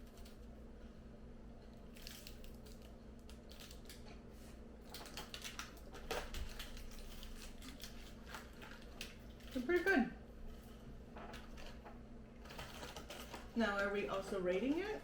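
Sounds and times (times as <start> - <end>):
person chewing crisp cookie: 1.6 - 9.6.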